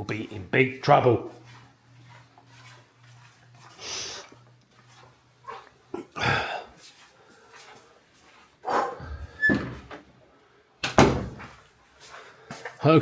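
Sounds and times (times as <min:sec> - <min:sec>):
door squeak: 0:09.3 - 0:10.0
door knocking and clunking: 0:10.9 - 0:11.5.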